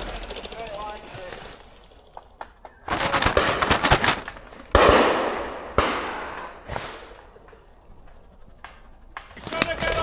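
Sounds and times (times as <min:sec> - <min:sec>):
branches crackling and snapping: 0:00.0 - 0:05.5
shotgun shots echoing: 0:04.6 - 0:07.1.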